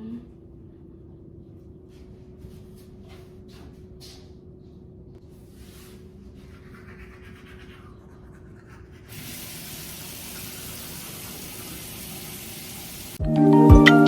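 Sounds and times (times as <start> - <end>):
tap water running: 9.1 - 13.2.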